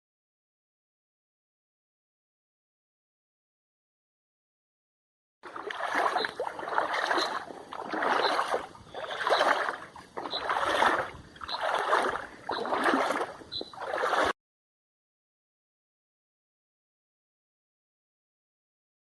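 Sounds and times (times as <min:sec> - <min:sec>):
scuffing footsteps: 0:05.7 - 0:14.3.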